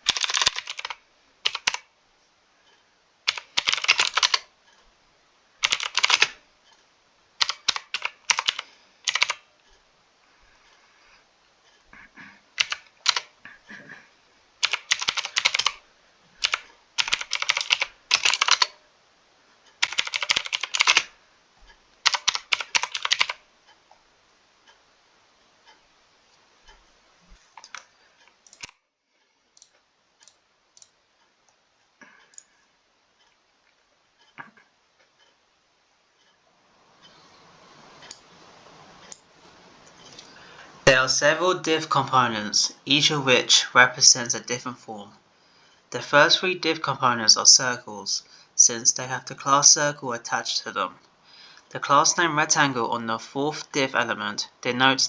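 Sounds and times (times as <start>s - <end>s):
typing on mechanical keyboard: 0.0s - 1.9s, 3.3s - 4.5s, 5.6s - 6.4s, 7.4s - 9.4s, 12.6s - 13.3s, 14.6s - 15.8s, 16.4s - 18.8s, 19.8s - 21.1s, 22.0s - 23.4s.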